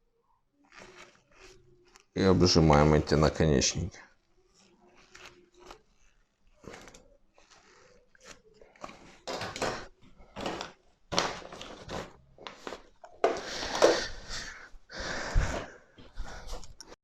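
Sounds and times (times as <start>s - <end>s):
pliers scraping and crinkling wire: 0.6s - 13.5s.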